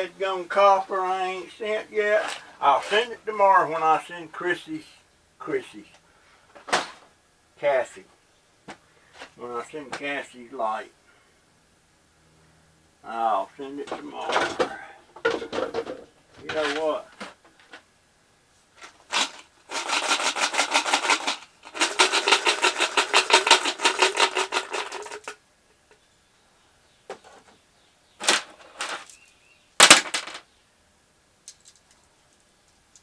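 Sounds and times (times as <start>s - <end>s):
sharp clattering knocks: 13.9s - 17.3s
rapid mechanical clicking rattle: 19.1s - 25.4s.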